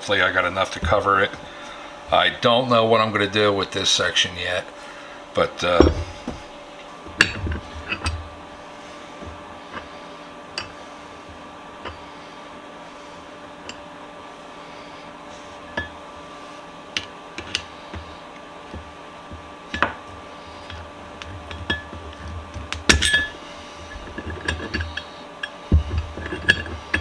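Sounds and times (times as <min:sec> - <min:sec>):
steady electrical hum: 0:00.0 - 0:27.0
metal parts clinking and knocking: 0:07.2 - 0:08.3, 0:20.6 - 0:27.0.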